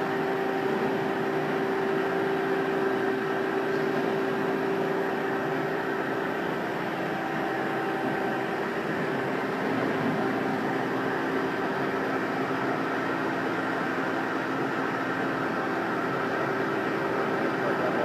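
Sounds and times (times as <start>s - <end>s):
hydraulic pump hum: 0.0s - 18.0s
steady machine tones: 0.0s - 18.0s.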